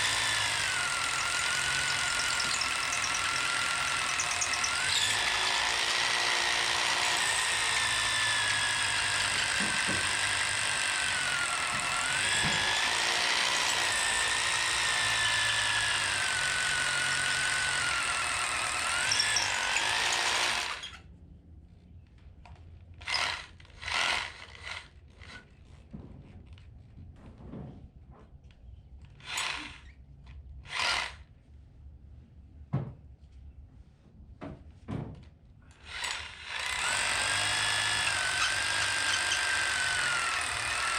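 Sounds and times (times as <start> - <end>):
hammer drill boring into concrete: 0.0 - 21.0, 23.0 - 25.4, 29.2 - 29.9, 30.7 - 31.2, 35.7 - 40.9.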